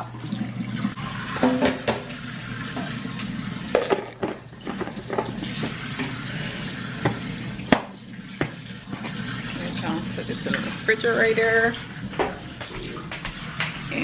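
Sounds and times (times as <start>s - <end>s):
tap running into sink: 1.2s - 10.8s, 11.9s - 14.0s
dishes knocking and clinking: 1.3s - 2.1s, 3.7s - 6.2s, 12.1s - 13.9s.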